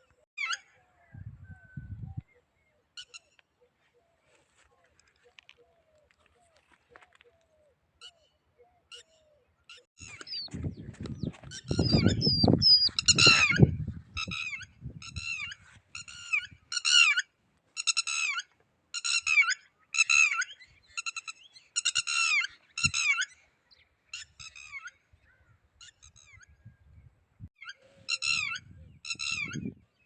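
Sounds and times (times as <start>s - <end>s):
lapwing calling: 4.9s - 23.4s.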